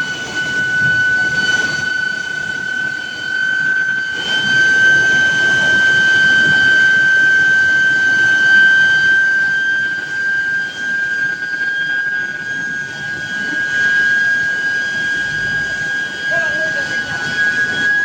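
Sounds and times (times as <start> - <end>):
furnace high-pitched whine: 0.0 - 18.0
industrial rumble and hiss: 14.9 - 18.0.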